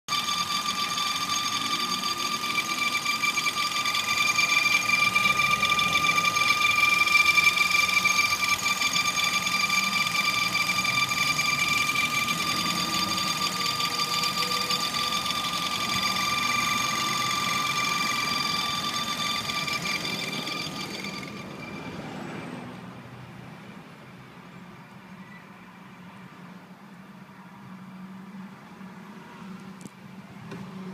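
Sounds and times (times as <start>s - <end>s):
car engine running: 0.1s - 22.1s
high-pitched whistle: 0.1s - 22.7s.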